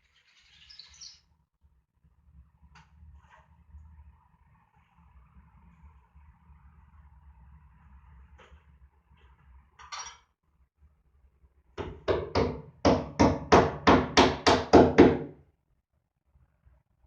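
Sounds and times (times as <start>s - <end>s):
scrape: 3.1s - 3.8s.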